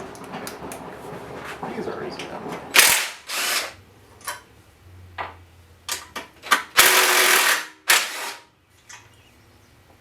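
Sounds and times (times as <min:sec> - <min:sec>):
cordless drill whirring: 0:02.9 - 0:03.8.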